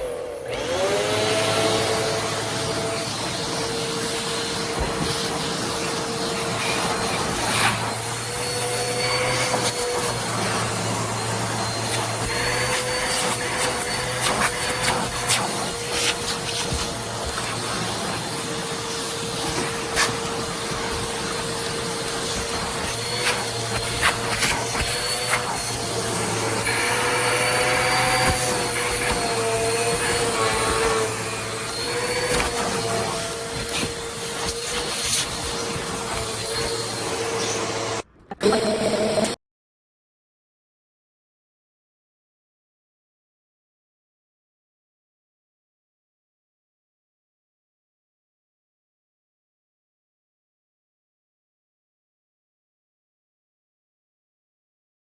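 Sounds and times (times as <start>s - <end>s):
vacuum cleaner motor whine: 0.0s - 39.4s.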